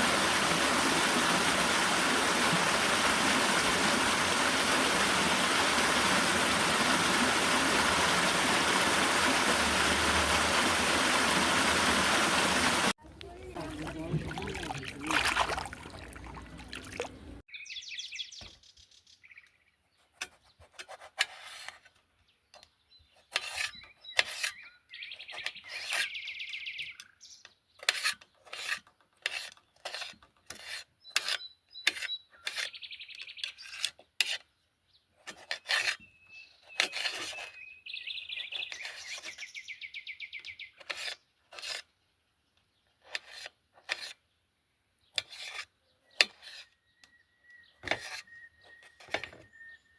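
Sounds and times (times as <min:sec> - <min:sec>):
birds singing trills: 0:17.5 - 0:20.0, 0:22.4 - 0:27.9, 0:31.0 - 0:34.1, 0:34.9 - 0:41.3, 0:45.8 - 0:49.9.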